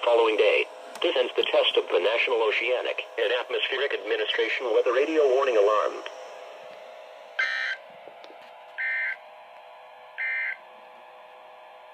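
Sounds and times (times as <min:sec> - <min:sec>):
faint radio hum: 0:00.0 - 0:09.2
shrill electronic data bursts: 0:07.4 - 0:07.8, 0:08.8 - 0:09.2, 0:10.2 - 0:10.6.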